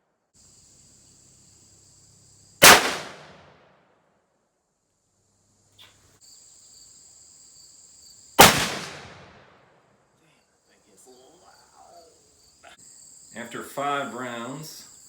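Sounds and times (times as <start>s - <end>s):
insects chirring: 0.4s - 3.4s, 4.9s - 15.0s
rifle shots with echo: 2.6s - 3.6s, 8.4s - 9.6s.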